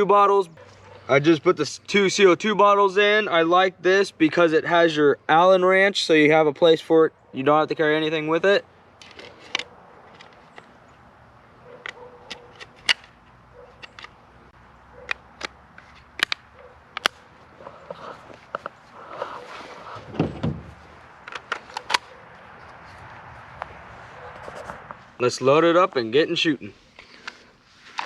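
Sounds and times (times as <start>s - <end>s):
clicks of rifle being handled: 9.0s - 10.8s, 11.8s - 14.2s, 15.0s - 19.4s, 21.2s - 22.2s.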